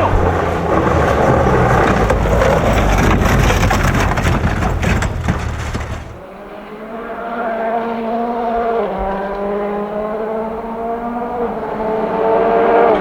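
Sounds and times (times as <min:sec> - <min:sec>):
crackles and flying stones: 0:00.0 - 0:06.2
rally car engine rumbling: 0:00.0 - 0:13.0.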